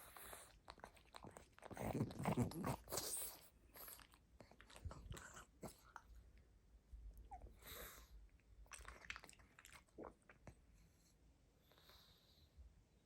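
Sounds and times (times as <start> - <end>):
dog chewing and smacking: 0.0 - 6.2, 8.6 - 10.5.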